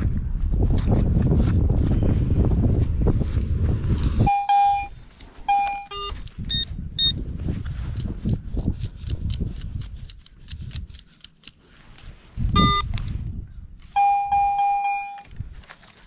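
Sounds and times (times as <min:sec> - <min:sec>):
metal detector tones: 0:04.2 - 0:07.2, 0:12.4 - 0:13.2, 0:13.8 - 0:16.0
digging in soil: 0:07.3 - 0:16.0.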